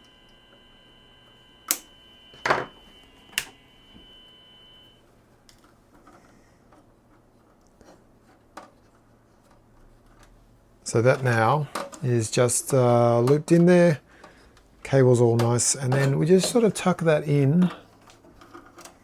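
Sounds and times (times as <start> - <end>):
faint high whine: 0.0 - 5.2.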